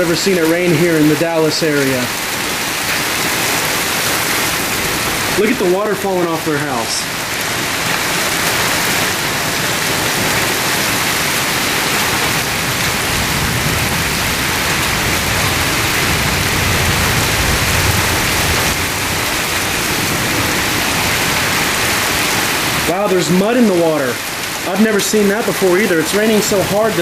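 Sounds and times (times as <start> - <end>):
torrential rain hissing: 0.0 - 27.0
low rumble: 12.3 - 22.3.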